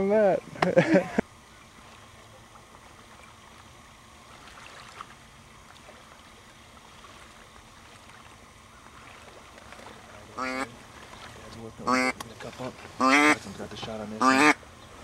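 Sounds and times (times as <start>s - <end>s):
water lapping and trickling: 0.0s - 15.0s.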